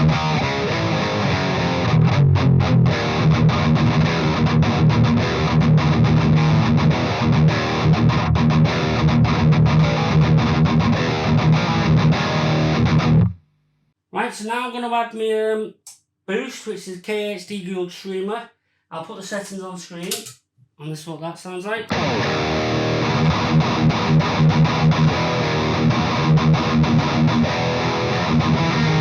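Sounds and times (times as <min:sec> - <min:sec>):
distorted electric guitar riff: 0:00.0 - 0:13.4, 0:21.9 - 0:29.0.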